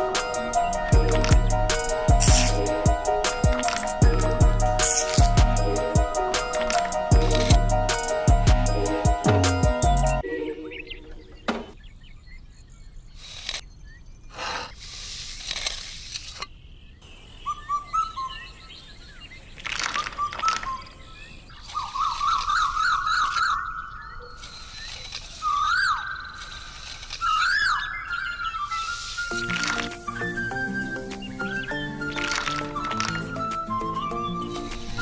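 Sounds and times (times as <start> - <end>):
small birds chirping and warbling: 0.0 - 35.0
short bursts of hissing noise: 13.2 - 13.6, 14.3 - 16.4
bird trilling run: 19.2 - 35.0.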